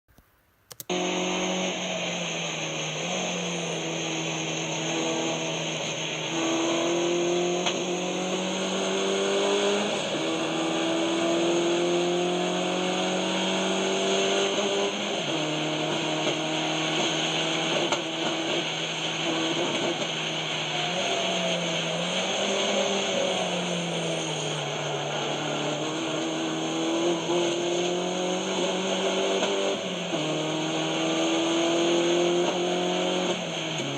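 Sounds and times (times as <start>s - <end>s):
sharp click: 0.1s - 0.9s
misfiring car engine running: 0.9s - 11.4s, 12.5s - 31.6s.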